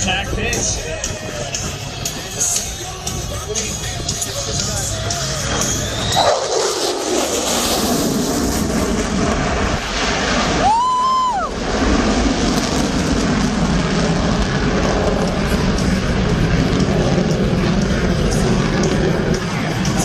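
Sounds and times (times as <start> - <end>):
military jet roaring past: 4.1 - 20.0.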